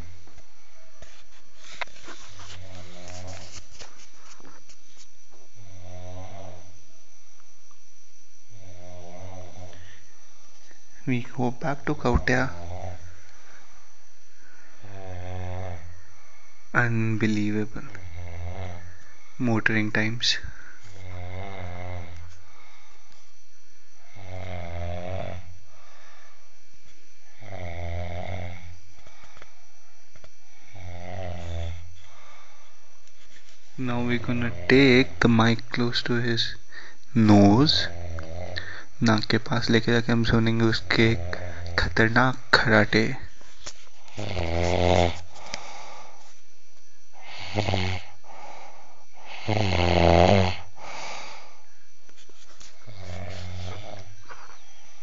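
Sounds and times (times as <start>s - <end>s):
man snoring: 2.4s - 3.6s, 5.5s - 6.8s, 8.5s - 10.0s, 12.1s - 13.0s, 14.7s - 15.9s, 18.0s - 19.3s, 20.8s - 22.9s, 24.0s - 26.0s, 27.2s - 29.2s, 30.4s - 32.6s, 33.9s - 35.5s, 37.3s - 38.9s, 40.4s - 43.2s, 44.0s - 46.2s, 47.1s - 51.7s, 52.7s - 55.0s.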